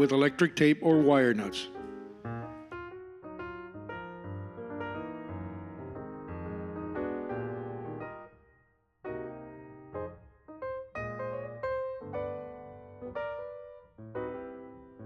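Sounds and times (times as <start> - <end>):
piano melody: 0.0 - 15.0.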